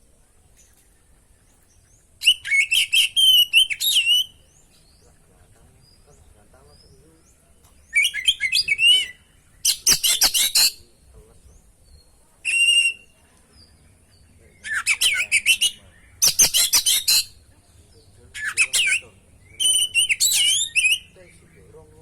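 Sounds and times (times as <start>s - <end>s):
bird singing whistled phrases: 2.2s - 5.0s, 7.8s - 11.0s, 11.8s - 13.8s, 14.4s - 17.4s, 18.3s - 21.6s
harsh rattling bird trills: 6.7s - 11.7s, 13.9s - 22.0s.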